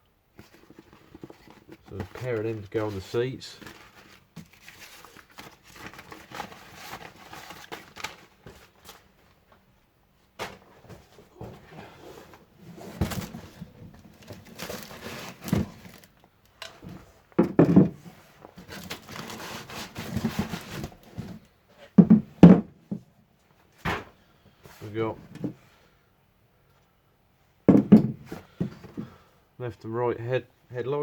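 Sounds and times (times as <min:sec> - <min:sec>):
packaging rustling: 0:00.4 - 0:09.3, 0:12.8 - 0:16.6, 0:18.5 - 0:21.3
knocks and thuds: 0:17.4 - 0:18.0, 0:22.0 - 0:23.0, 0:27.7 - 0:29.1.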